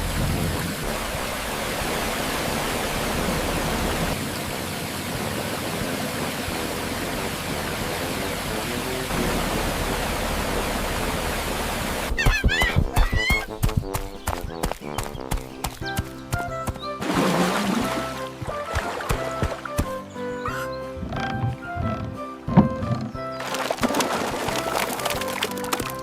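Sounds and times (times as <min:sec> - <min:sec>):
low rumble: 0:00.0 - 0:12.1
rushing water: 0:00.0 - 0:26.0
faint music: 0:12.6 - 0:26.0.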